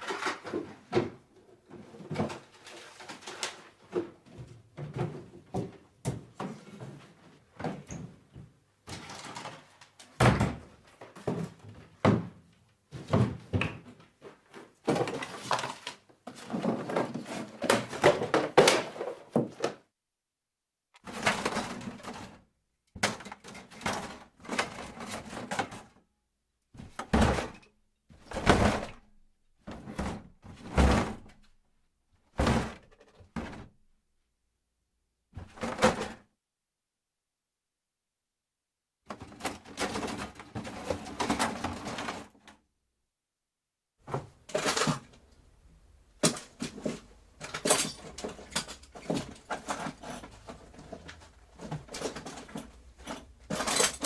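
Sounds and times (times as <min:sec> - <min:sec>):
small items rattling in a drawer: 0:00.0 - 0:07.8, 0:08.8 - 0:12.0, 0:12.9 - 0:19.8, 0:21.0 - 0:26.0, 0:39.1 - 0:42.6, 0:44.3 - 0:45.5, 0:46.1 - 0:54.0.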